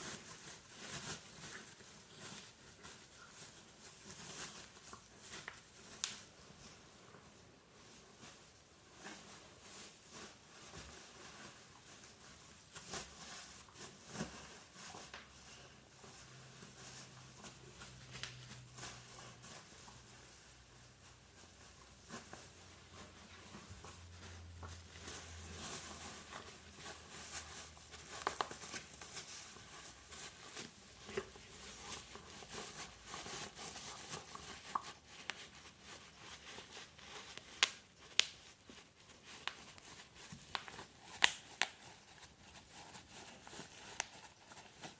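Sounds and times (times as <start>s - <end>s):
bubble wrap crinkling: 0.0s - 6.8s, 7.7s - 44.9s.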